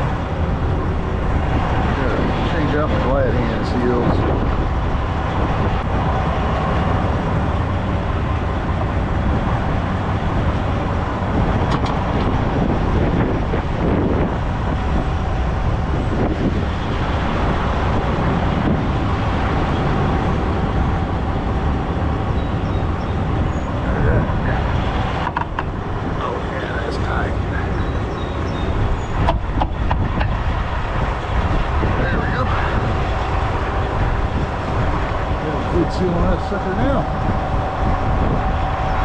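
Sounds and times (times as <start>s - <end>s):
truck engine rumble: 0.0s - 39.0s.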